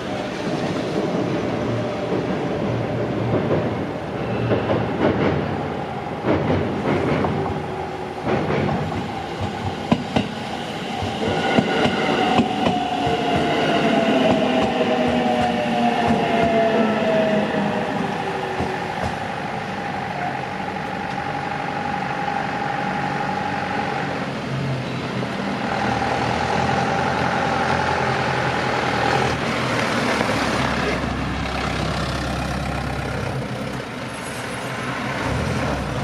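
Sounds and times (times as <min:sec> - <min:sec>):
train whine: 0:00.0 - 0:36.0
train wheels clacking: 0:18.4 - 0:19.4.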